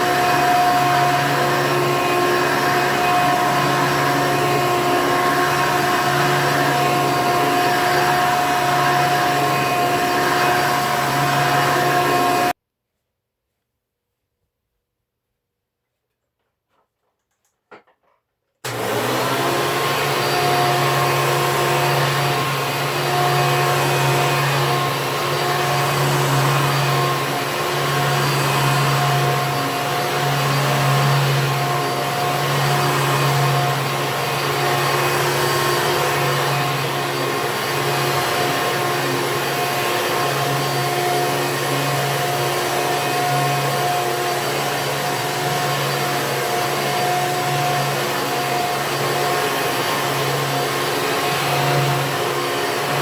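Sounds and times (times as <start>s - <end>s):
upright vacuum cleaner running: 0.0s - 12.6s, 18.6s - 53.0s.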